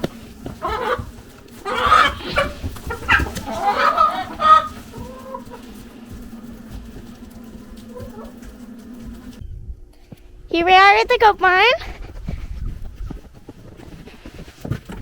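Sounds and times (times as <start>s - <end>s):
chickens clucking: 0.0s - 9.4s
steady low hum: 0.0s - 15.0s.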